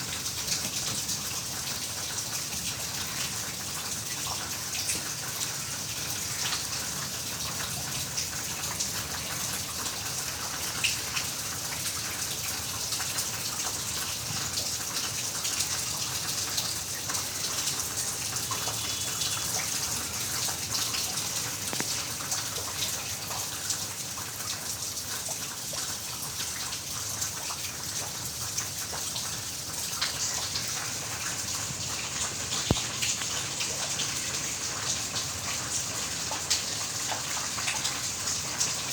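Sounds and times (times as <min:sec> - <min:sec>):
heavy rain falling: 0:29.6 - 0:38.9.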